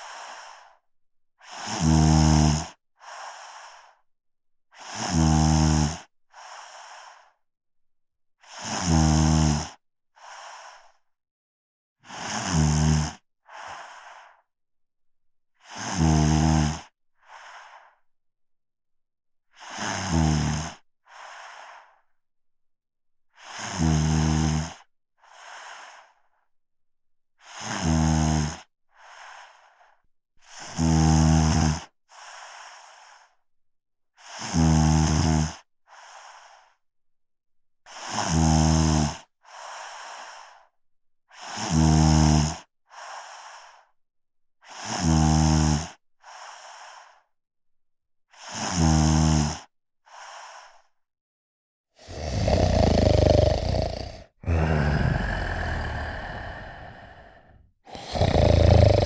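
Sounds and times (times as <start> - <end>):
person snoring: 1.4 - 3.2, 4.8 - 6.7, 8.4 - 9.8, 12.0 - 13.8, 15.6 - 17.4, 19.6 - 21.3, 23.4 - 25.6, 27.5 - 29.2, 30.5 - 31.9, 34.2 - 36.2, 38.0 - 39.3, 41.3 - 43.4, 44.6 - 47.0, 48.4 - 50.8, 52.0 - 59.0
breathy exhale: 52.0 - 59.0.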